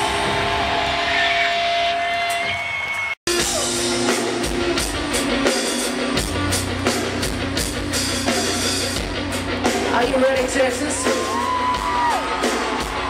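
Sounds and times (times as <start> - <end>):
drum kit with cymbal hits: 3.3 - 13.0.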